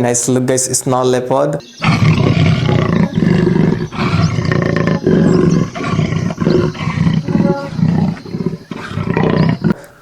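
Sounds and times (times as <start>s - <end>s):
animal roars: 1.8s - 9.8s.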